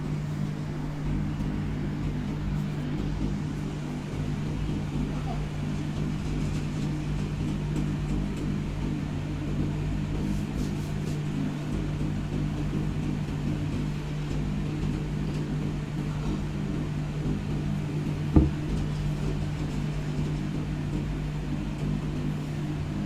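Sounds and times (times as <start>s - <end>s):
low mechanical hum: 0.0s - 23.0s
thump: 18.3s - 18.8s.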